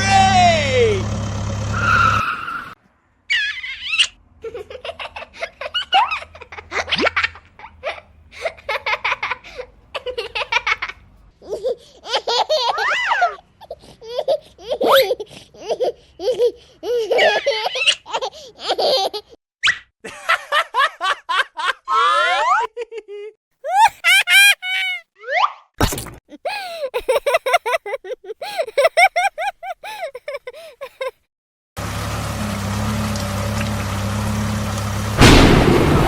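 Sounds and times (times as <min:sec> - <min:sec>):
baby laughing: 0:03.3 - 0:19.4, 0:21.9 - 0:25.0, 0:26.3 - 0:31.3.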